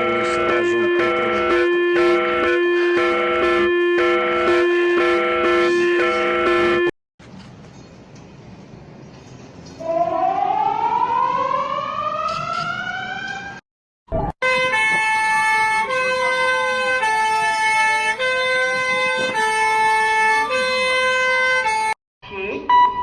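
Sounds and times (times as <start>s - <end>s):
harsh alarm tones: 0.0s - 6.9s, 9.8s - 13.6s
rising siren wail: 0.0s - 6.9s, 9.8s - 13.6s, 14.2s - 22.0s
siren tone sweeping: 0.0s - 6.9s, 9.8s - 13.6s.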